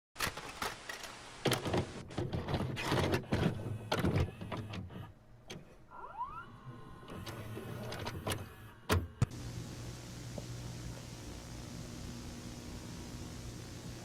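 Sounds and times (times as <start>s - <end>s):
steady tape hiss: 0.2s - 2.0s, 9.3s - 14.0s
cassette mechanism clunks and clicks: 1.5s - 5.7s, 7.2s - 9.3s.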